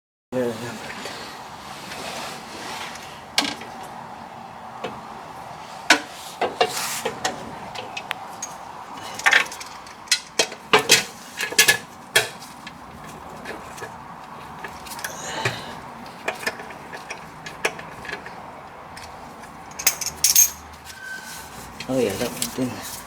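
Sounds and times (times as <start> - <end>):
hand tools and parts clinking: 5.9 - 23.0.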